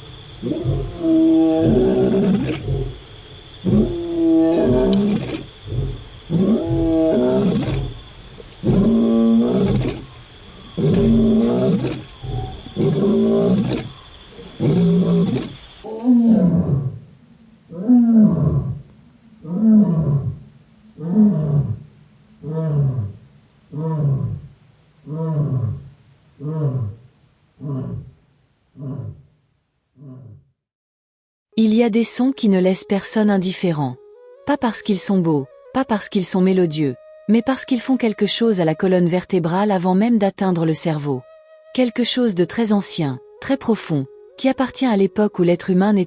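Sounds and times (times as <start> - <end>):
lion roaring: 0.4 - 17.1, 17.7 - 20.4, 21.0 - 28.2, 28.8 - 29.3, 30.0 - 30.4.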